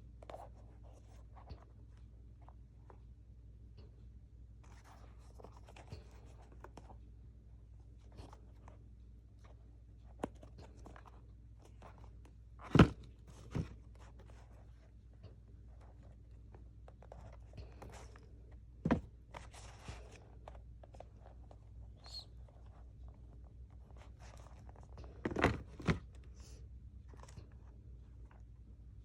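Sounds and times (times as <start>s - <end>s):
box knocks: 12.7s - 13.7s, 18.8s - 19.1s.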